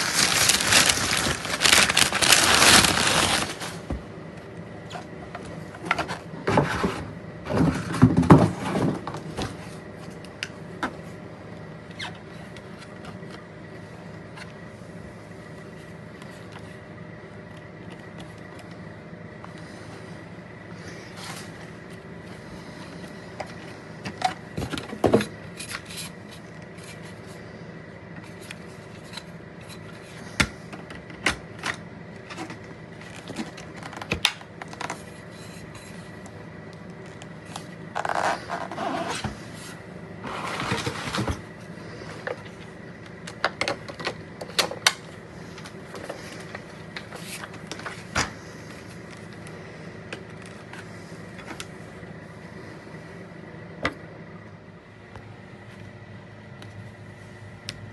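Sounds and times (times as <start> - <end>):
rustling: 0.0 - 3.9
steady low hum: 0.0 - 57.9
handling clicks knocks and scrapes: 22.8 - 27.4.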